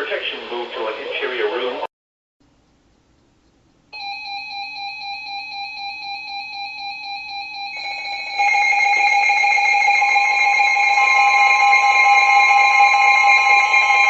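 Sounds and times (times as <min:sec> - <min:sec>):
pulsing electronic alert tone: 0:04.0 - 0:14.0
higher alert tone: 0:07.8 - 0:14.0.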